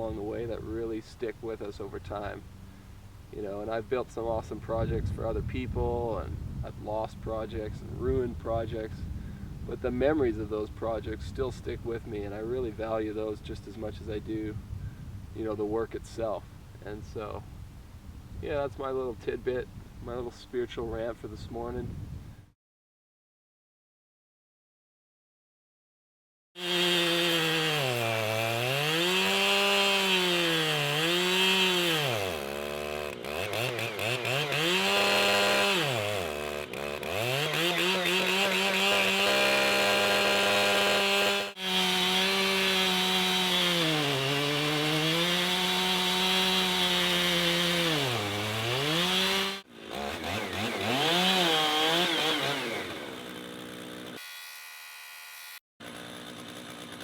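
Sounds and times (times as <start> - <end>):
chainsaw cutting log: 26.6 - 57.0.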